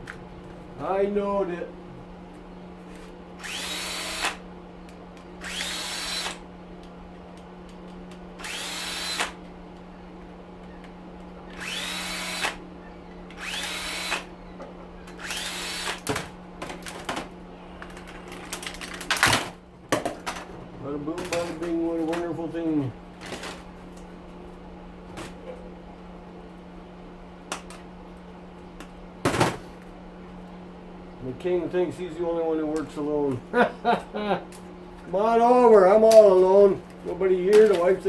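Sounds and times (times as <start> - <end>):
cordless drill motor whine: 3.3 - 4.5, 5.4 - 6.5, 7.9 - 9.5, 10.6 - 16.1.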